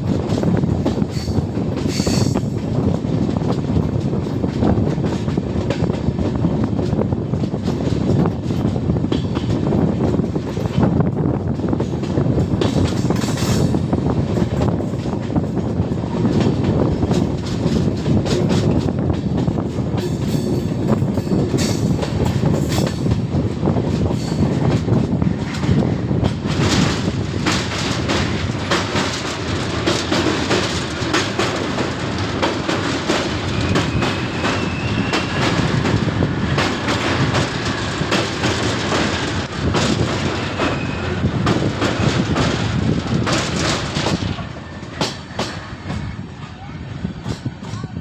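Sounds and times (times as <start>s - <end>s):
train rail rumble: 0.0s - 48.0s
wheels clattering over rail joints: 11.5s - 46.1s.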